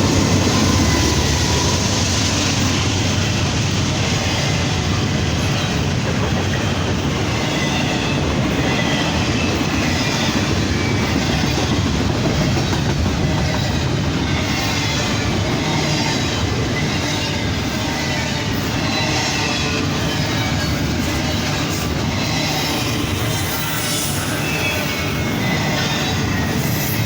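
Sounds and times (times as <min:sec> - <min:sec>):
train rumble: 0:00.0 - 0:27.0
train wheels clacking over rail joints: 0:05.3 - 0:17.3
faint high wheel squeal: 0:16.8 - 0:27.0.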